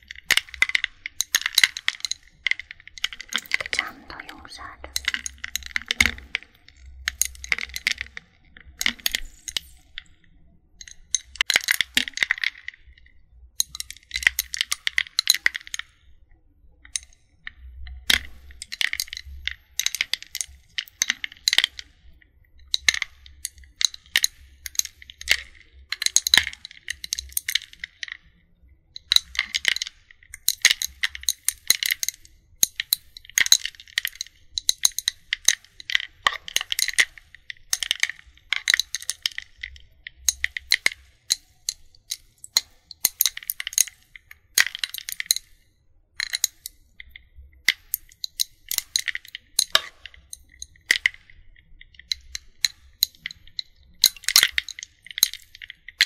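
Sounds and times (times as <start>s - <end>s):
ice cubes crackling and popping: 0.1s - 10.1s, 10.8s - 12.9s, 18.1s - 21.9s, 22.6s - 28.2s, 29.0s - 45.6s, 46.2s - 56.0s.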